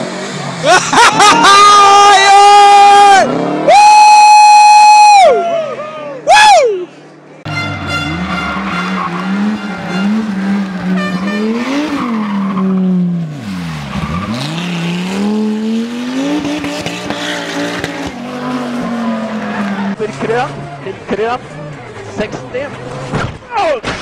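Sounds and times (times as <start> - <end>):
tyres skidding: 7.0 - 24.0
rally car engine at high revs: 8.1 - 23.3.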